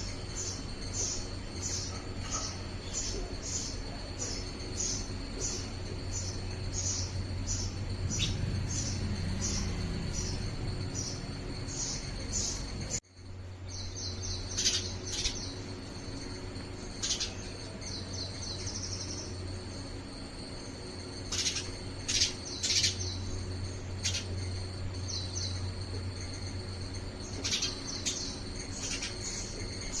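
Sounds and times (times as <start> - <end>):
sparrow chirping: 0.0 - 13.0, 13.7 - 16.0, 21.3 - 24.4, 27.2 - 30.0.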